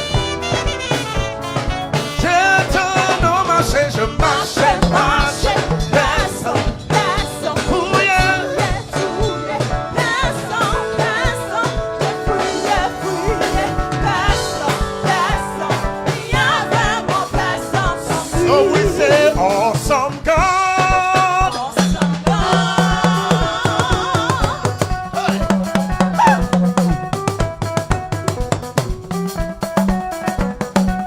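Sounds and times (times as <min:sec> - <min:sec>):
drum kit beating: 0:00.0 - 0:31.0
live band playing: 0:00.0 - 0:31.0
gospel choir singing: 0:02.8 - 0:20.2, 0:21.4 - 0:26.5.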